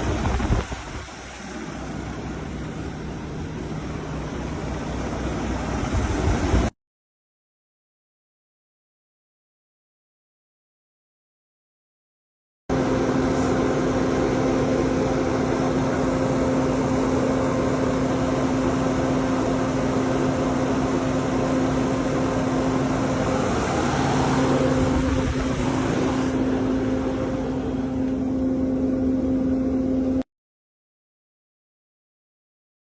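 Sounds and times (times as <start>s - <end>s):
diesel engine idling: 0.0s - 6.7s, 12.7s - 30.2s.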